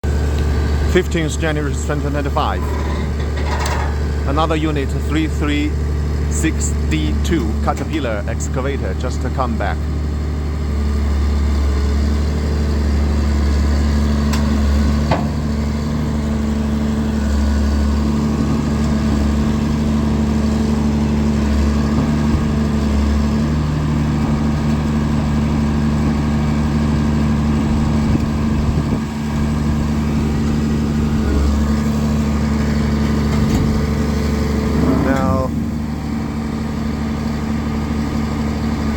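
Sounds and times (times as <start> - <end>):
diesel engine idling: 0.0 - 38.9.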